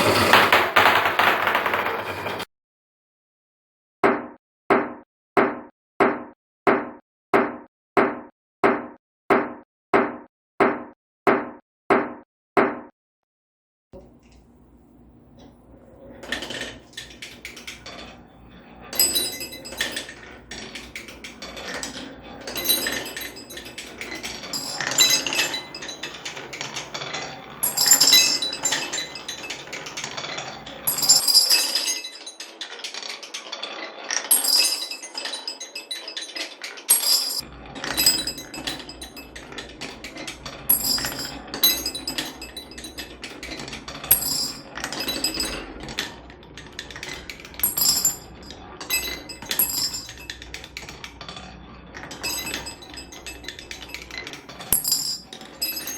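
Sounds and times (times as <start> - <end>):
marbles rolling down a track: 0.0 - 2.5, 15.7 - 55.9
marbles clinking into glass bottle: 16.0 - 55.9.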